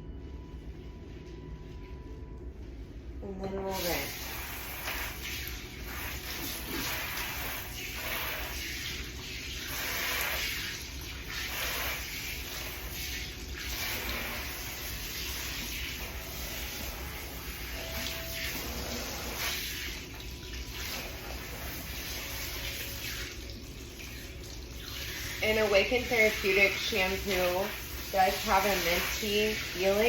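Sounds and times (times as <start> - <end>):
water spray hissing: 25.0 - 30.0.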